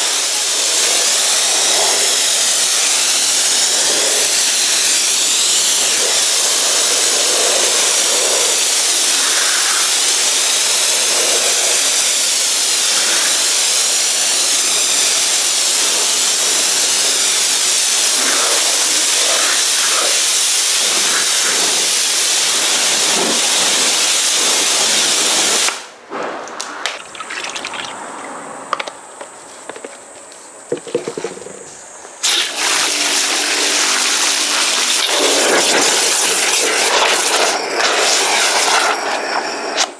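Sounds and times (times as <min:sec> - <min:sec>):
pressure washer spraying water: 0:00.0 - 0:25.9, 0:32.2 - 0:39.9
water dripping: 0:26.9 - 0:28.0, 0:32.3 - 0:39.1.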